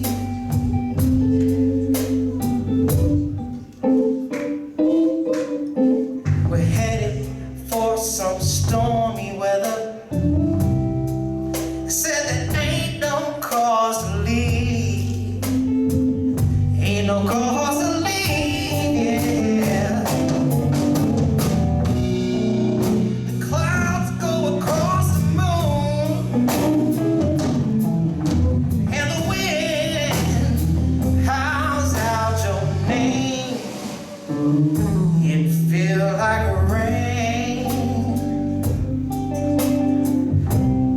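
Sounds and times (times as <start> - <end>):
man singing: 0.0 - 1.1, 6.3 - 10.6, 11.9 - 21.0, 22.9 - 26.8, 28.8 - 38.8
blues band playing: 0.0 - 40.9.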